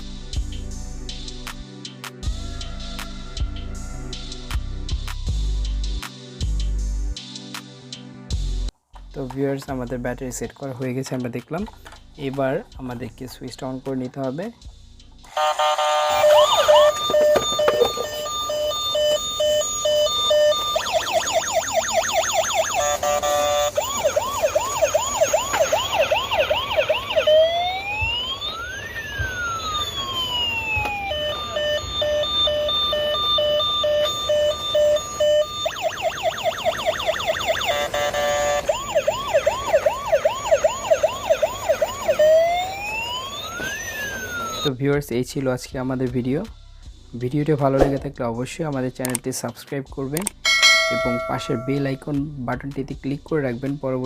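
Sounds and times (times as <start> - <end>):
toy siren pulsed beeping: 15.3 - 44.7, 50.5 - 52.0
toy siren wail: 15.3 - 44.7
toy siren yelp: 15.3 - 44.7.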